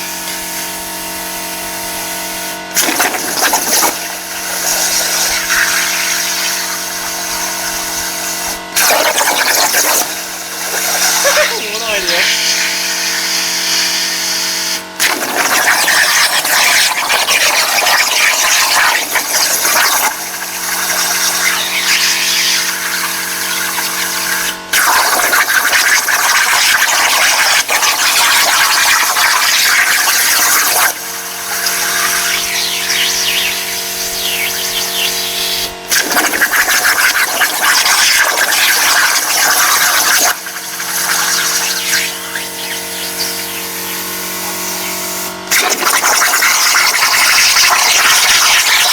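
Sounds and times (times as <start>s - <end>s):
steady machine hum: 0.0s - 13.8s, 30.2s - 37.7s, 39.0s - 46.0s
plasma arc hissing and crackling: 0.0s - 14.8s, 28.2s - 47.9s.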